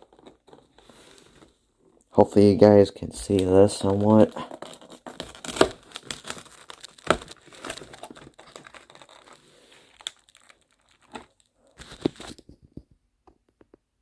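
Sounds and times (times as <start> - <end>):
cardboard rustling: 0.0 - 2.0, 3.1 - 12.5
cardboard box crinkling and tearing: 3.2 - 12.4.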